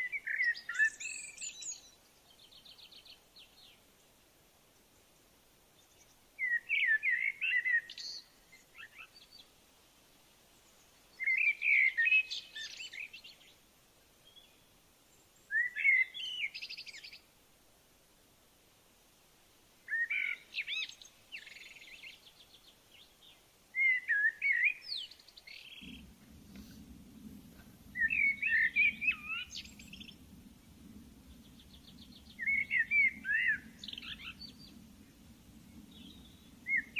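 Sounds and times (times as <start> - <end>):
songbird warbling: 25.8 - 36.9.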